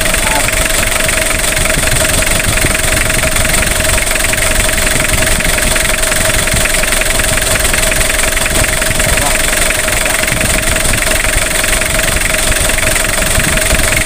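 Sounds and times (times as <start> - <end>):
diesel engine idling: 0.0 - 14.0
engine whine: 0.0 - 14.0.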